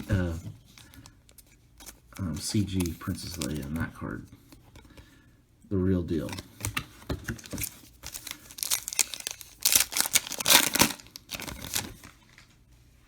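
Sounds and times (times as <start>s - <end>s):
wrapper crinkling and tearing: 0.0s - 3.9s, 6.2s - 12.5s.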